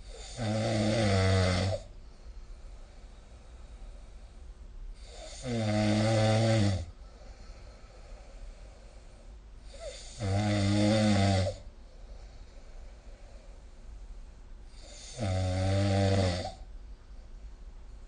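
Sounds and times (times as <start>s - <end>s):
person snoring: 0.0s - 1.9s, 5.0s - 8.3s, 9.7s - 11.7s, 14.7s - 16.6s.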